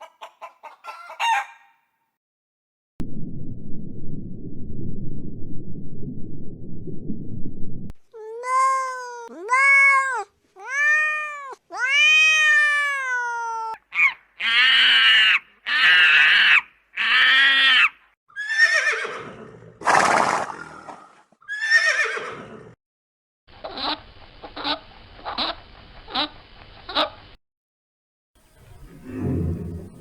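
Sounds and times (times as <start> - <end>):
harsh animal calls: 28.6 - 30.0.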